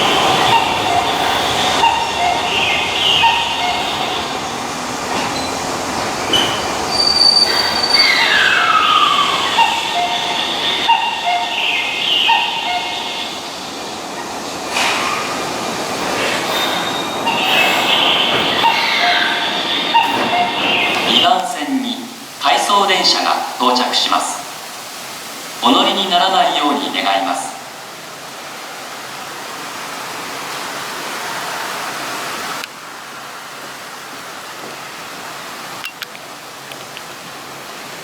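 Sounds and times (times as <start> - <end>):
high wavering wheel squeals: 0.0 - 13.4, 16.5 - 21.1
train rumbling: 0.0 - 38.0.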